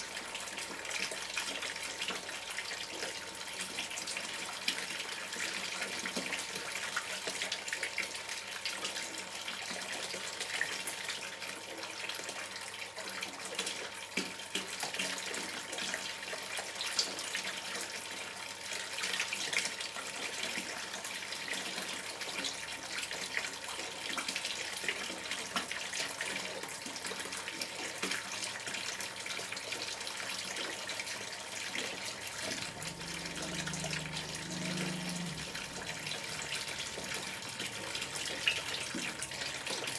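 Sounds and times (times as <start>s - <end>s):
river water gurgling: 32.3s - 39.9s
low hum: 32.4s - 39.0s.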